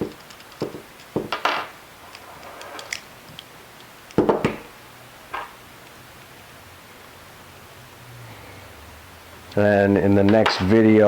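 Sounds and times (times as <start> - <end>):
tools clicking and knocking: 0.0 - 3.4
parts clattering: 10.2 - 11.0.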